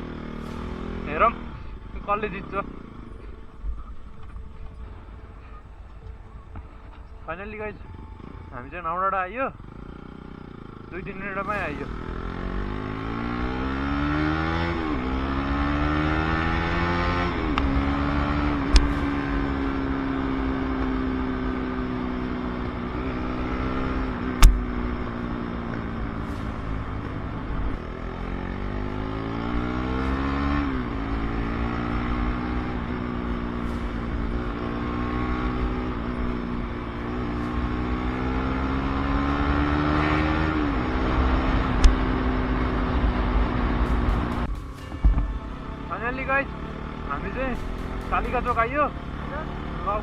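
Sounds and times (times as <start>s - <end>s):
motorcycle engine cruising: 0.0s - 50.0s
short thump: 24.4s - 24.7s.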